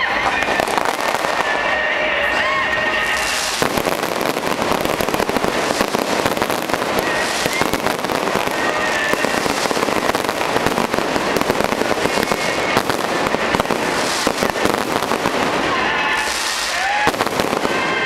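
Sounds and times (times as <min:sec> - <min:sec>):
fireworks cracking and popping: 0:00.0 - 0:18.0
fireworks whistling: 0:00.0 - 0:18.0.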